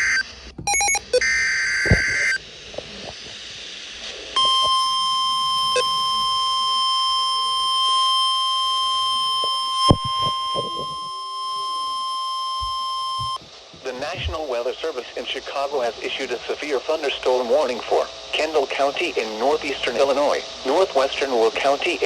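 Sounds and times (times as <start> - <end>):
data burst: 0.0 - 2.4, 4.4 - 12.0
steady warning alarm tone: 0.0 - 2.4, 4.4 - 14.4.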